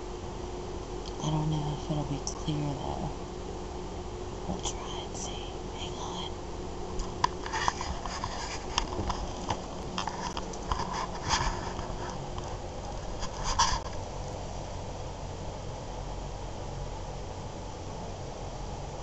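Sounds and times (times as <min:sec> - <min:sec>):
low background hum: 0:00.0 - 0:19.0
soft scratching and rustling: 0:07.0 - 0:14.6.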